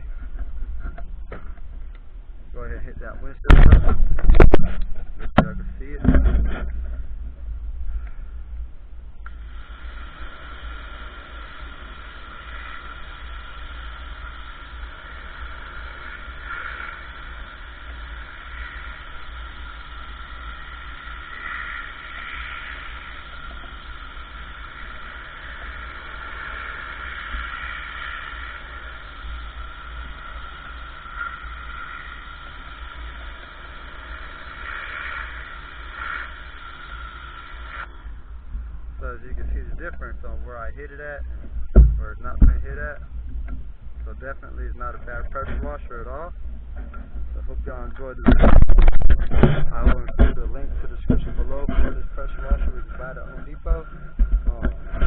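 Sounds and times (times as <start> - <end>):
pressure washer spraying: 9.3 - 38.0.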